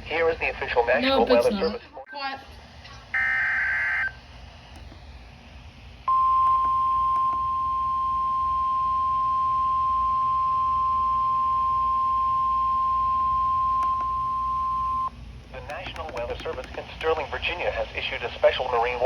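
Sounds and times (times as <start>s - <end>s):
steady warning beep: 3.2s - 4.2s, 6.1s - 15.1s
faint radio static: 13.8s - 19.0s.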